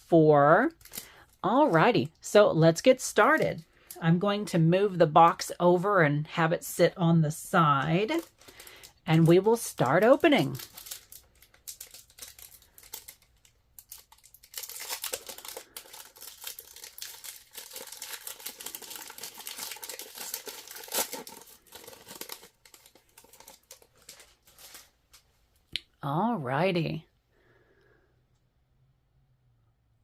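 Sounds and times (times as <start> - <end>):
wrapper tearing and crinkling: 0.7 - 1.3, 8.0 - 25.2.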